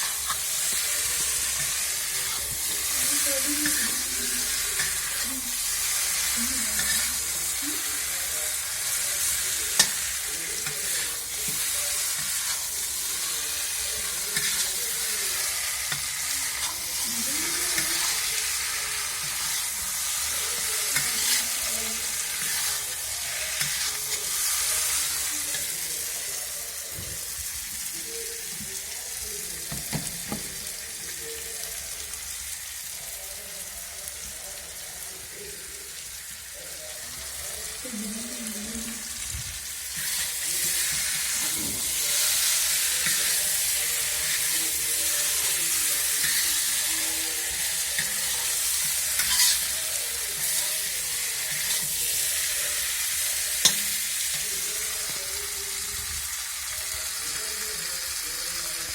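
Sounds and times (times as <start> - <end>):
chicken sizzling in a pan: 0.0 - 58.9
spoon clicking and scraping pan: 9.7 - 13.1, 47.5 - 52.4, 53.5 - 54.5.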